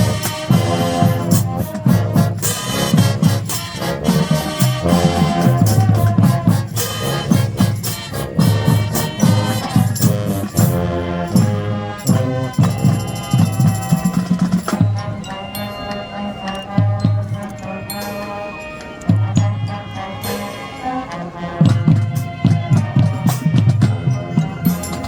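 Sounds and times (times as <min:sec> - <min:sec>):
deep drum beats: 0:00.0 - 0:15.3, 0:21.6 - 0:25.0
marching band playing: 0:00.0 - 0:25.0.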